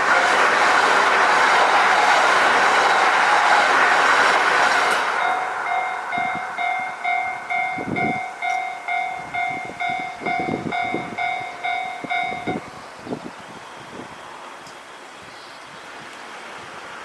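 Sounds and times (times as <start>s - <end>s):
passing train rumble and clatter: 0.0s - 17.0s
railroad crossing warning bell: 2.6s - 3.4s, 4.9s - 12.8s.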